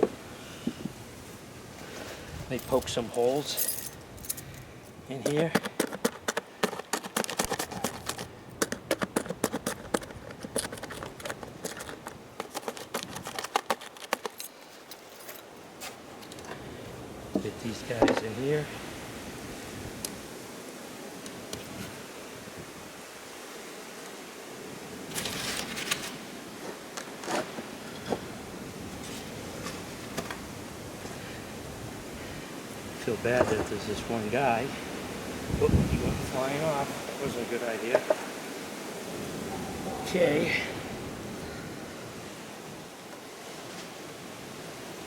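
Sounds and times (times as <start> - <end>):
steady background hiss: 0.0 - 6.6, 13.9 - 45.0
wooden parts scraping and knocking: 2.6 - 16.6, 17.4 - 18.3, 25.1 - 26.2, 33.3 - 33.9
rapid irregular clicks and taps: 5.2 - 14.5.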